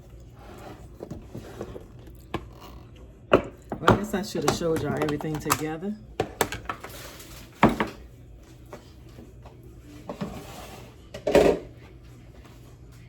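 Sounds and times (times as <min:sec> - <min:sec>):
dishes knocking on counter: 0:03.3 - 0:05.6, 0:07.6 - 0:08.0.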